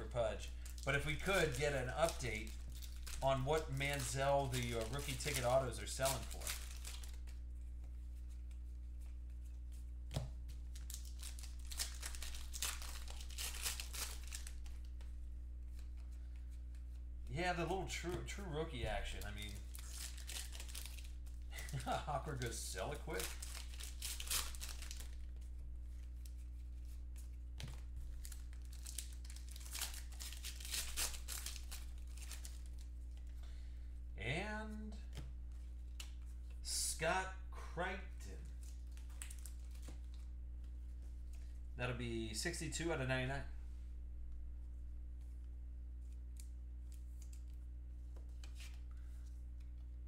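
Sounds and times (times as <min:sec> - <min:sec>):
low electrical hum: 0:00.0 - 0:50.0
wrappers tearing and crinkling: 0:00.5 - 0:07.3, 0:10.7 - 0:14.9, 0:18.9 - 0:25.3, 0:28.2 - 0:32.9, 0:38.6 - 0:40.2.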